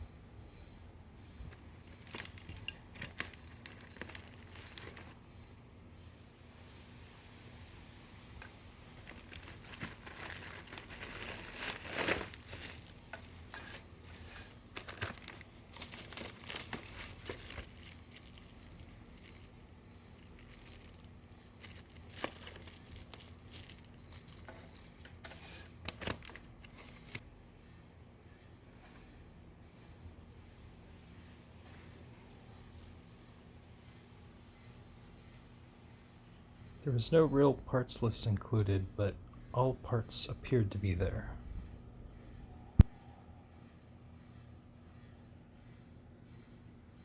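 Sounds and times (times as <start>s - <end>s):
plastic packaging crinkling: 1.6s - 5.2s, 8.5s - 27.2s.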